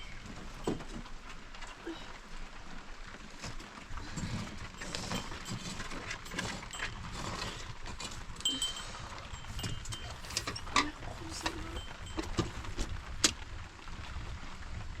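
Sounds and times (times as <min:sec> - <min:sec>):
small livestock bells tinkling: 0:04.1 - 0:13.0.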